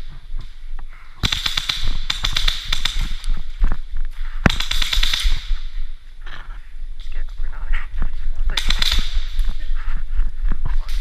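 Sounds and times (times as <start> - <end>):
airsoft guns firing in bursts: 1.2 - 5.9, 8.5 - 9.9.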